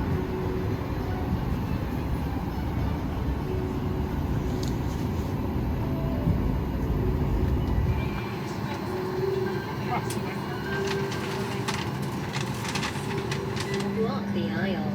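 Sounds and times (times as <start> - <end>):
airliner cabin rumble: 0.0 - 14.0.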